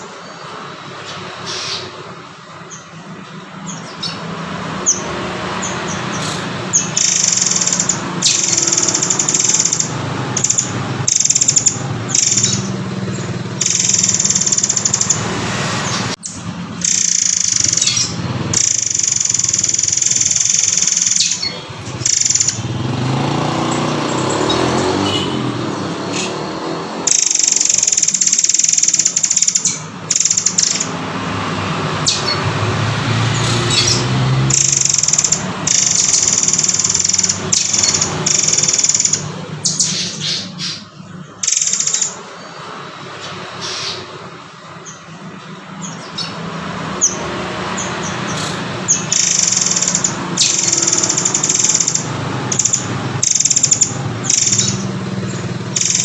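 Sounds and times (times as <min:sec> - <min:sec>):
buzzy bird trills: 0:00.0 - 0:56.0.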